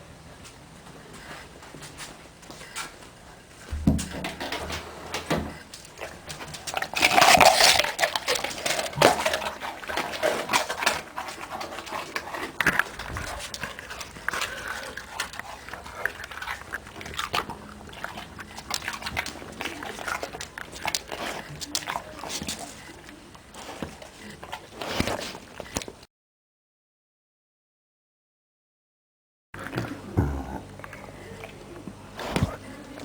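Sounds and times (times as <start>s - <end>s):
dog making sounds: 5.8s - 26.0s, 29.6s - 33.0s.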